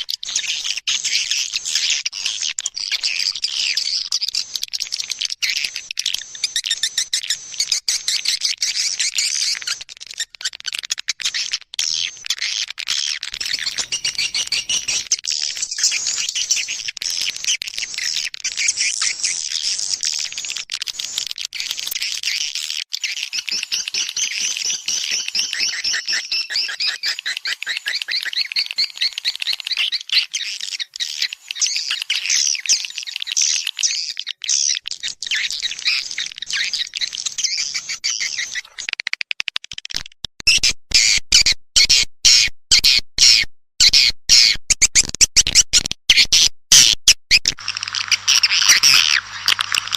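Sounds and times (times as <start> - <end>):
swiftlets chirping and twittering: 11.4 - 38.9, 47.6 - 49.9.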